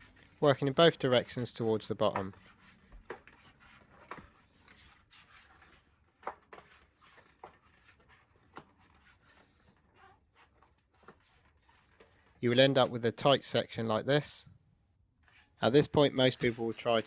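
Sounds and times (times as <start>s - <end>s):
tyre rubbing on rim: 0.0s - 5.9s, 15.2s - 17.0s.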